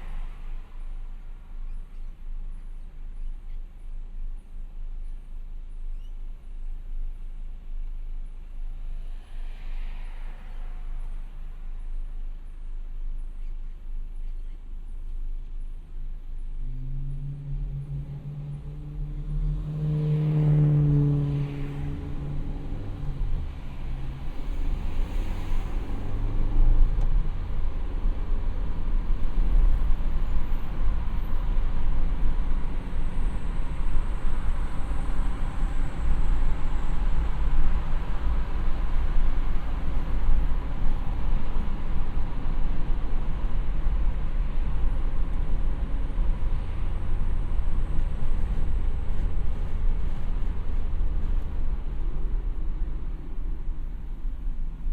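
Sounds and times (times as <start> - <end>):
faint steady whine: 0.0 - 19.5
car engine rumbling: 0.0 - 54.9.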